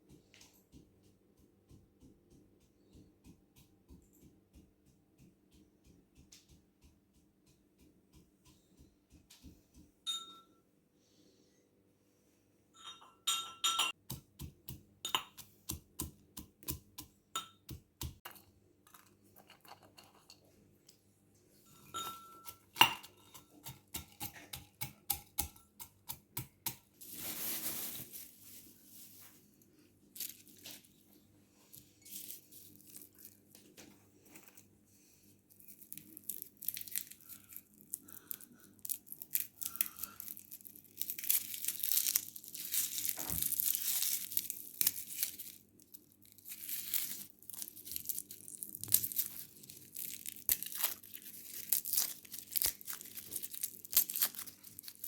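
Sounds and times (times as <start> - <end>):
rustling: 27.0 - 34.7.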